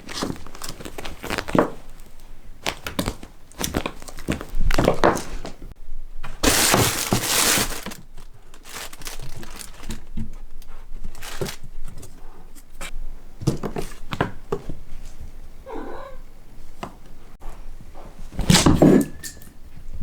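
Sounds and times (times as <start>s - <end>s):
material crinkling and rustling: 0.0s - 14.2s.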